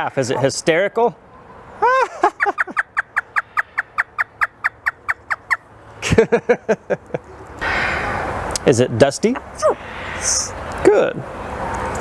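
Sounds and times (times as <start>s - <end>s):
parrot imitating laughter: 1.8s - 4.5s.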